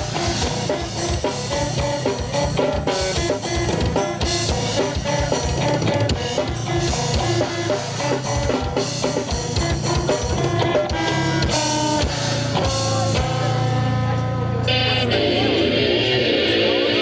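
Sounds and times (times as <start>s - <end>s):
rapid drum kit hits: 0.0s - 13.5s
electric guitar riff: 0.0s - 17.0s.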